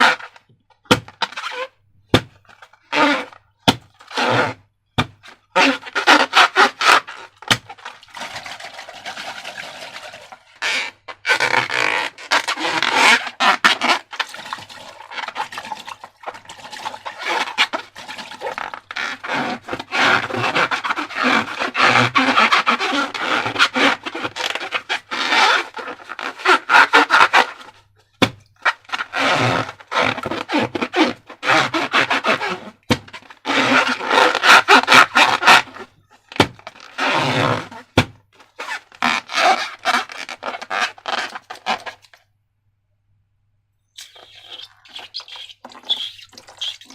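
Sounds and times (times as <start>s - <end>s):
crackly rustling and rubbing: 5.2s - 42.2s.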